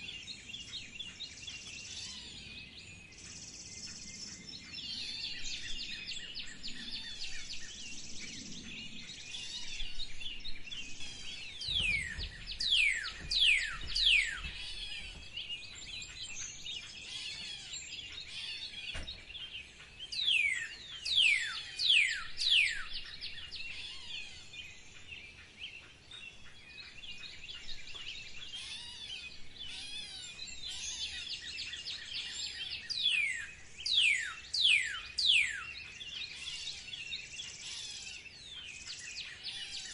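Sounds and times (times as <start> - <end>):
songbirds chirping: 0.0 - 39.9.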